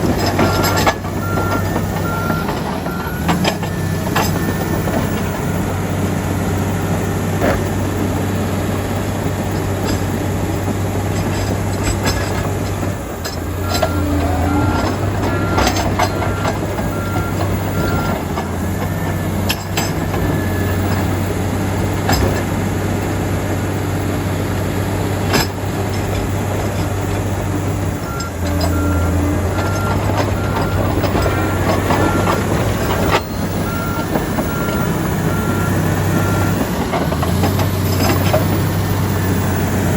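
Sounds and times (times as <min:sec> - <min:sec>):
steel tracks clanking: 0:00.0 - 0:23.2, 0:25.2 - 0:39.9
diesel engine hum: 0:00.0 - 0:39.9
reverse alarm beeping: 0:00.1 - 0:07.2, 0:13.6 - 0:21.3, 0:28.0 - 0:36.7.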